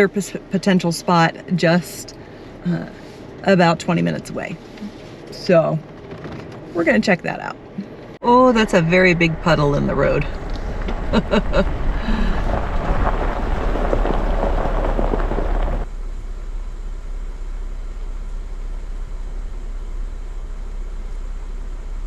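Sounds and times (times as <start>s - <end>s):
low engine rumble: 0.0s - 22.0s
tyres crunching over gravel: 8.5s - 15.9s.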